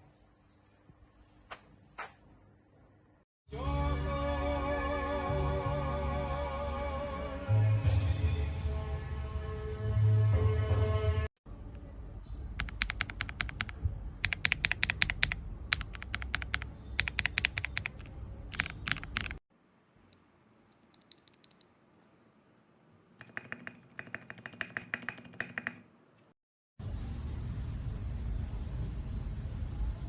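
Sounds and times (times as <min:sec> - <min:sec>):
mechanical keyboard typing: 0:12.6 - 0:19.4, 0:20.8 - 0:21.6, 0:23.2 - 0:25.9.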